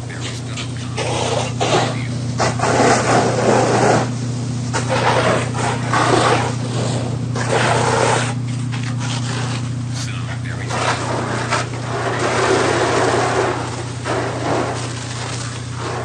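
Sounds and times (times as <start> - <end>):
fire truck engine humming: 0.0 - 16.0.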